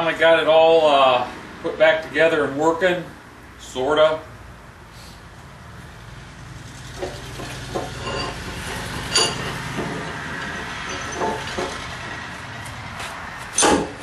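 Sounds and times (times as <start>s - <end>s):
metal vise clinks and knocks: 7.0s - 12.3s, 13.6s - 14.0s.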